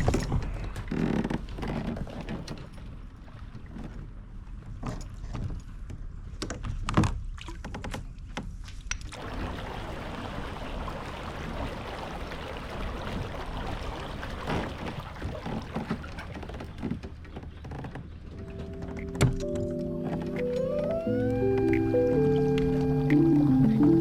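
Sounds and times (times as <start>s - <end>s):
water washing: 9.1s - 24.0s.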